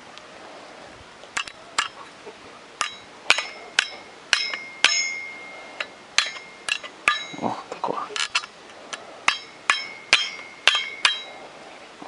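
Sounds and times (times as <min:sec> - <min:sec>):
hammer striking metal: 0:02.8 - 0:07.4, 0:09.3 - 0:11.4.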